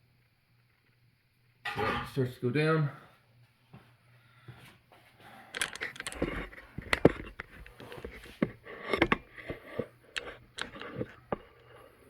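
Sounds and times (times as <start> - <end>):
hand tools clicking and clanking: 5.5 - 11.7.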